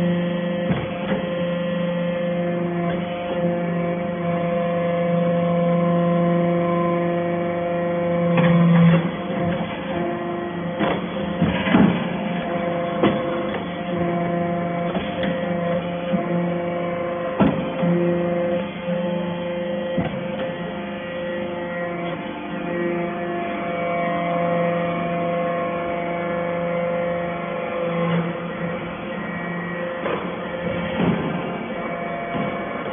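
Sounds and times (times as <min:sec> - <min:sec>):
hydraulic unit humming: 0:00.0 - 0:32.9
sharp knocks: 0:17.4 - 0:17.8.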